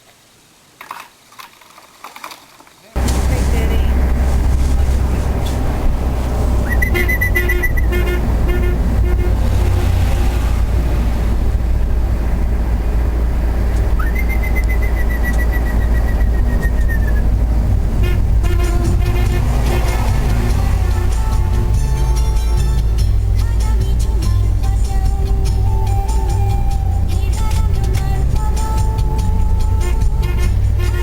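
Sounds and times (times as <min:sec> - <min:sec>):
vehicle rumble: 0:00.0 - 0:31.0
high whistle-like tones: 0:06.6 - 0:08.0, 0:13.9 - 0:17.4.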